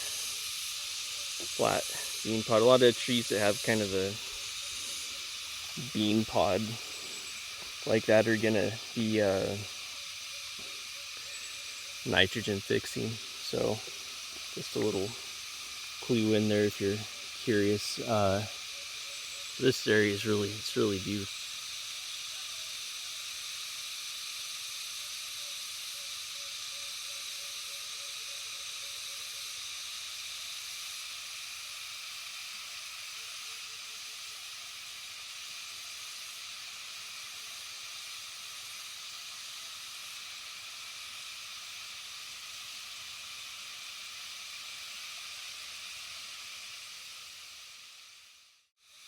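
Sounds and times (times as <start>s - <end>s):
cicadas buzzing: 0.0s - 49.0s.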